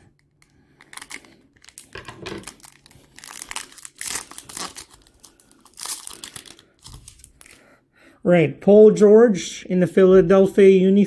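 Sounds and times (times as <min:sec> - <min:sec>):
wrapper crinkling and tearing: 0:00.0 - 0:07.6.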